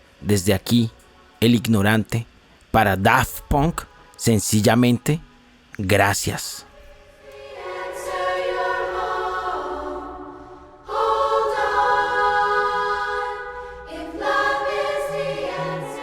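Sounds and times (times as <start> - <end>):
sustained choral chords: 6.6 - 16.0.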